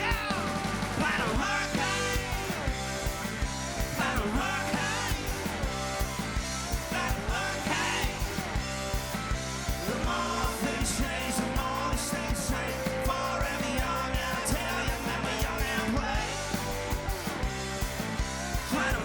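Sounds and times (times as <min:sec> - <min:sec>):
rock band playing live: 0:00.0 - 0:19.0
steady drum beat: 0:00.0 - 0:19.0.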